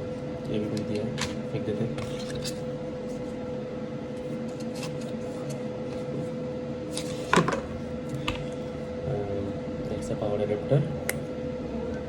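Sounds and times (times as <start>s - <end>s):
steady background hum: 0.0s - 12.0s.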